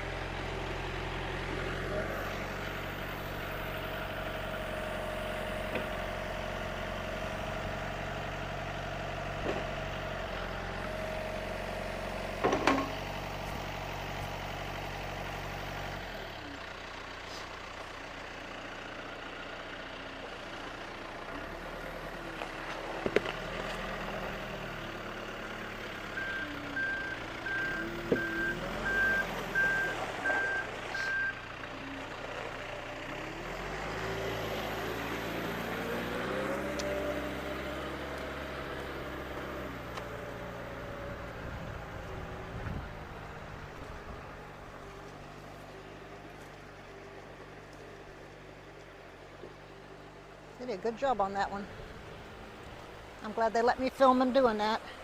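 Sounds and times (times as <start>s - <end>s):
backhoe engine running: 0.0s - 55.0s
reversing alarm beeping: 26.1s - 31.4s.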